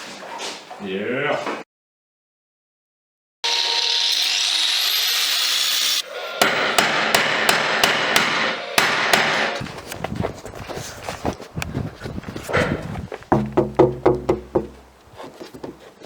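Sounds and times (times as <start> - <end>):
rising whine: 3.4 - 8.8
hammer striking metal: 6.0 - 9.6, 13.4 - 15.0.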